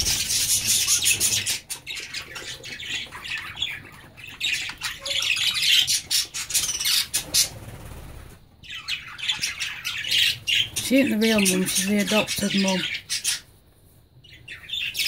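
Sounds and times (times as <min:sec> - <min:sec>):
budgerigars chattering and squawking: 0:00.0 - 0:13.5, 0:14.3 - 0:15.0.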